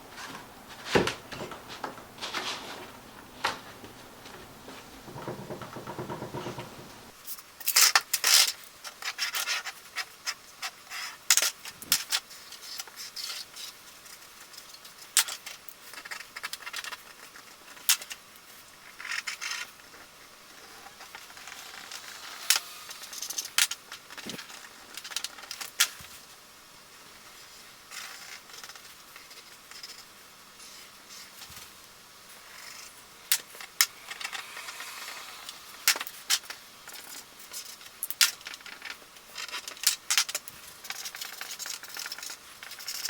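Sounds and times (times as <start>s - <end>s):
rustling rubbing noises: 0.1s - 7.2s.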